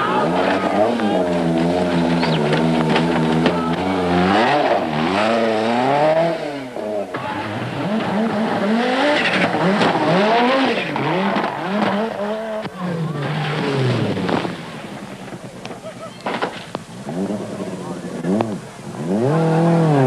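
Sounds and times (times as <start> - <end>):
rally car engine revving: 0.0 - 20.0.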